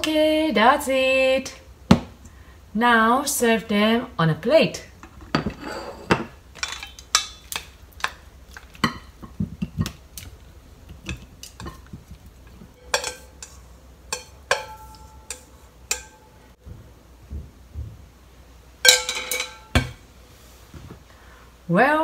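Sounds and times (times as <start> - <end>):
utensils clinking against dishes: 5.0 - 10.0, 12.7 - 16.4, 18.9 - 20.0
ringing clinks of dishware: 12.8 - 13.5.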